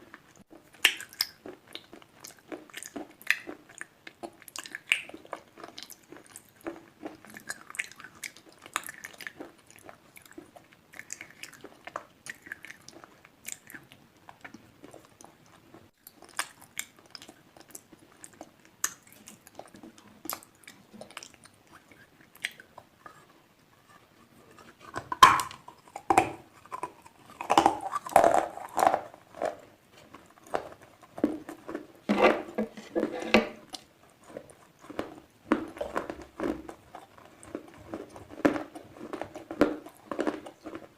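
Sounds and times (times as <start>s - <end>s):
slate pencils crunching in mouth: 16.0s - 40.9s.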